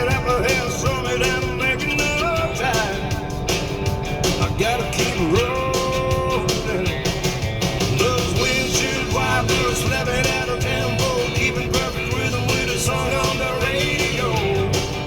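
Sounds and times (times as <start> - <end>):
rock and roll guitar music: 0.0 - 15.0.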